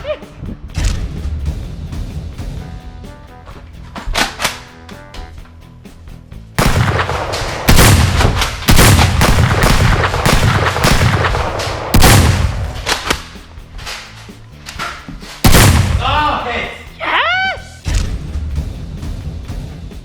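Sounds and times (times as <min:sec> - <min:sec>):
background music: 0:00.0 - 0:20.0
gunfire-like shooting: 0:06.6 - 0:13.2, 0:15.4 - 0:16.4.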